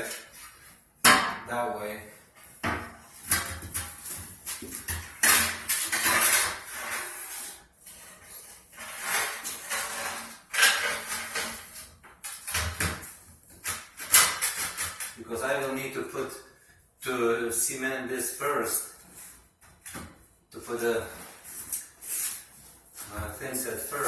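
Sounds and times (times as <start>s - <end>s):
tiles scraping across floor: 2.3s - 15.2s, 20.7s - 24.0s.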